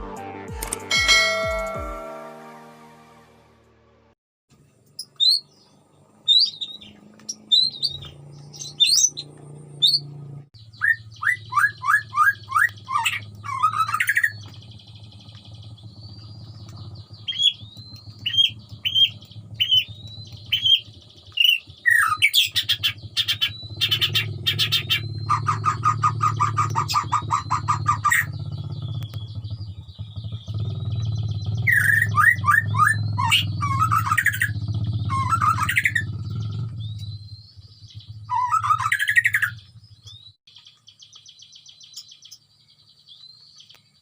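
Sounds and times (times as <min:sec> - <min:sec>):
songbird singing: 0:04.5 - 0:44.0
steady low hum: 0:09.2 - 0:40.2.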